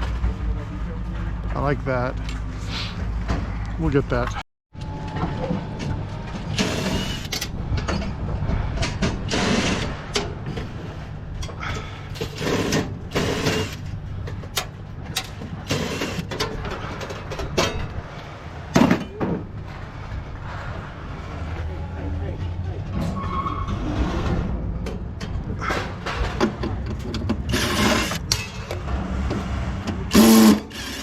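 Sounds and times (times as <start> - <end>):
scrap clattering and scraping: 5.1 - 21.7, 22.9 - 30.5.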